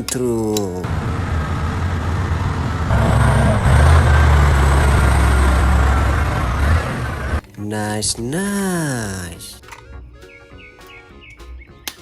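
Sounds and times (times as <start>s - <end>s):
heavy truck engine running: 0.8s - 7.4s.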